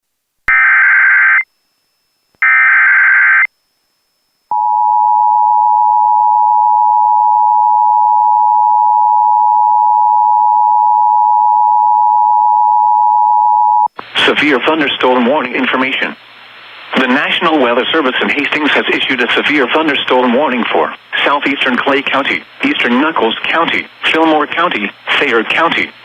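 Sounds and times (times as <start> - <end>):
steady single-pitch attention tone: 4.5 - 13.9.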